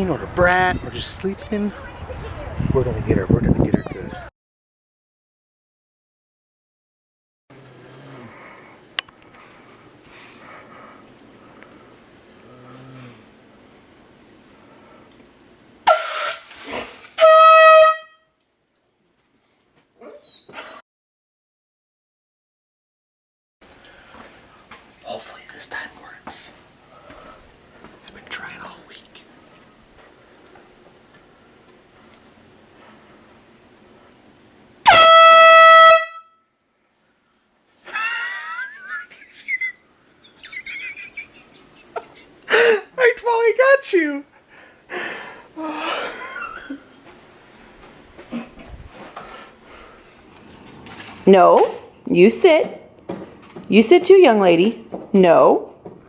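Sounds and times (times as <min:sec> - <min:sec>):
air horn blasting: 0:17.2 - 0:18.3, 0:34.8 - 0:36.4.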